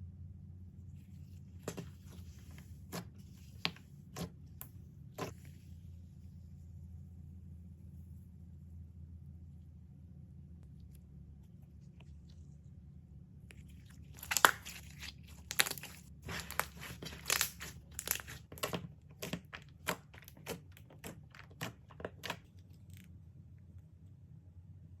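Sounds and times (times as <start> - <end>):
crunchy slime crackling: 13.5 - 23.2.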